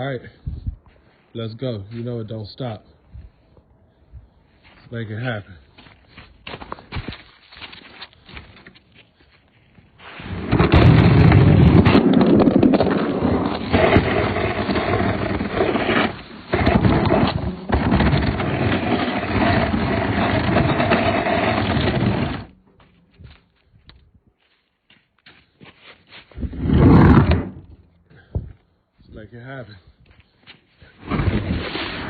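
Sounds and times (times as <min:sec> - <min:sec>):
refrigerator scraping across floor: 0:10.0 - 0:22.5, 0:26.3 - 0:27.8, 0:31.0 - 0:32.0.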